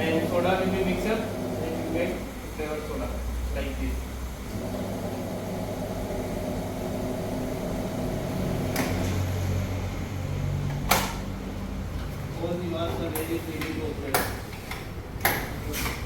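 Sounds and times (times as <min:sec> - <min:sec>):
soda machine motor hum: 0:00.0 - 0:12.2.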